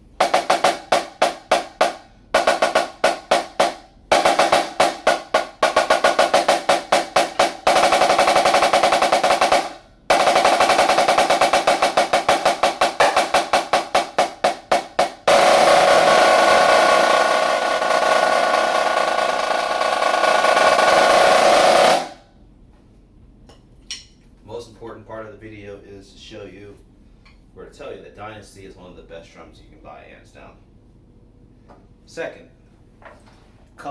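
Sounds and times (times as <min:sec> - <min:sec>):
snare drum strokes and rolls: 0:00.0 - 0:22.2.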